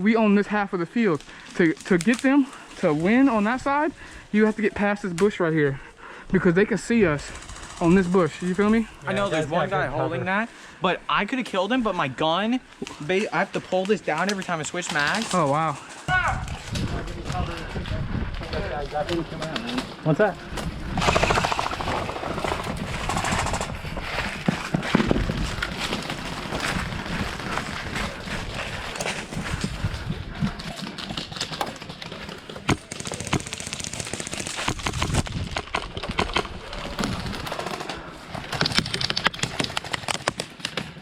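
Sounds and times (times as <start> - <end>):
airsoft guns firing in bursts: 21.0 - 23.8, 32.6 - 35.1.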